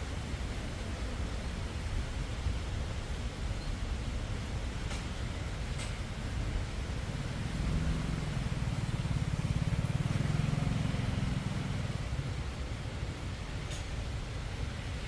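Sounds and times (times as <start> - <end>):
vehicle engine hum passing: 6.6 - 15.0.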